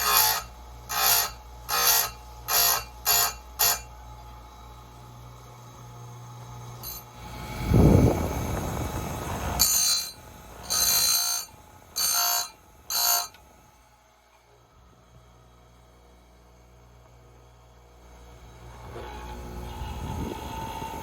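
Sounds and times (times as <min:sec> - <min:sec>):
high-pitched grinding: 0:06.8 - 0:13.4.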